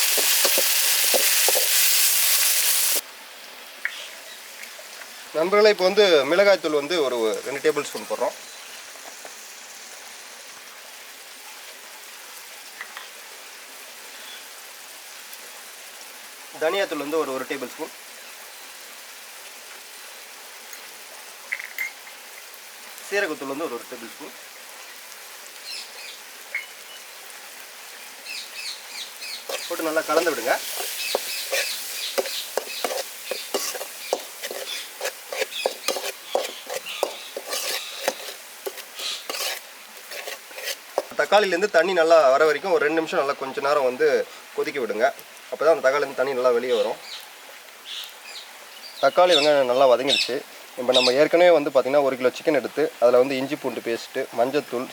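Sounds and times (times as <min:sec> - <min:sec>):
vegetables sizzling in hot oil: 0:00.0 - 0:03.0, 0:04.0 - 0:51.5
spatula clacking against pan: 0:29.5 - 0:41.1.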